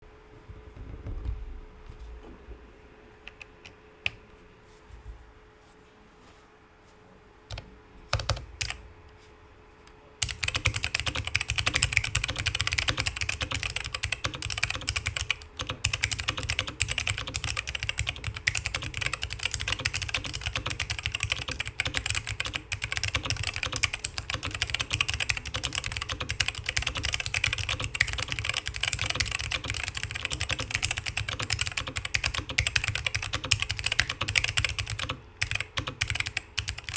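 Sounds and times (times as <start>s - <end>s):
mechanical keyboard typing: 7.5s - 8.8s, 10.2s - 36.9s.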